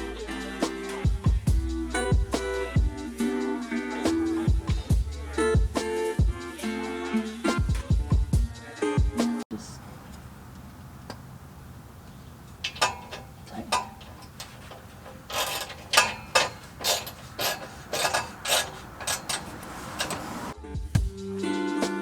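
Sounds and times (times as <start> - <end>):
hard objects clicking and knocking: 12.5 - 20.6.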